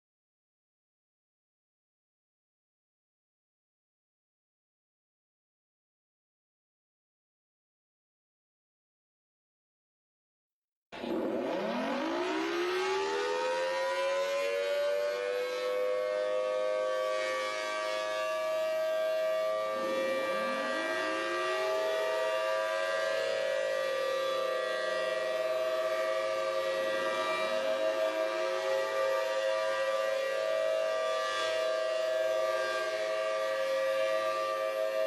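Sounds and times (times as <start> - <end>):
warning sirens wailing: 11.0 - 35.0.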